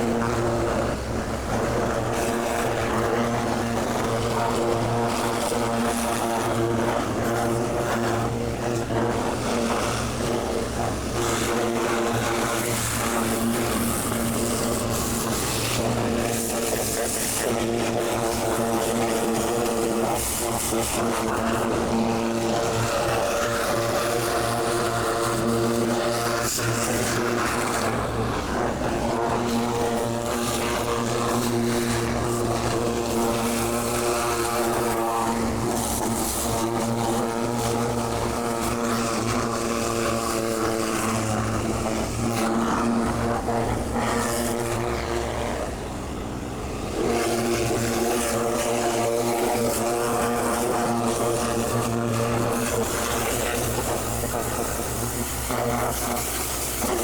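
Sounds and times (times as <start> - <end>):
pressure washer engine droning: 0.0 - 57.0.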